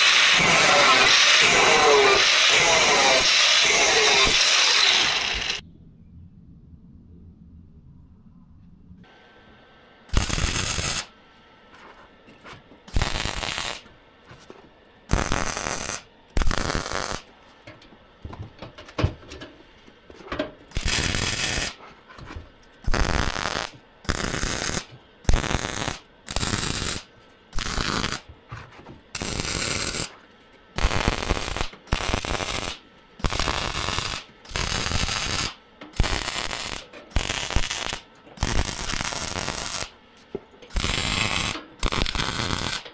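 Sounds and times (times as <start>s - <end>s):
welding arc crackling: 0.0s - 5.6s, 10.1s - 11.1s, 12.9s - 13.9s, 15.1s - 17.3s, 20.7s - 21.8s, 22.8s - 28.3s, 29.2s - 30.1s, 30.8s - 39.9s, 40.7s - 42.9s.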